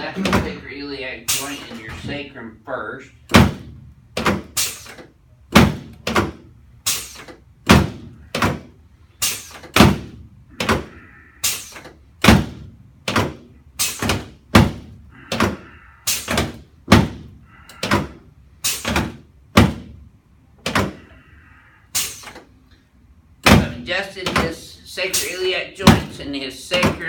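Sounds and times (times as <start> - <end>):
sharp thumps of body adjustment: 16.3 - 20.0.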